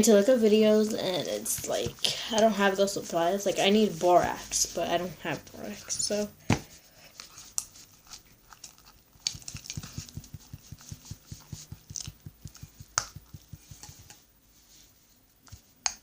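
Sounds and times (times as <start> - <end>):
slime squelching: 0.6 - 6.3, 7.1 - 14.2.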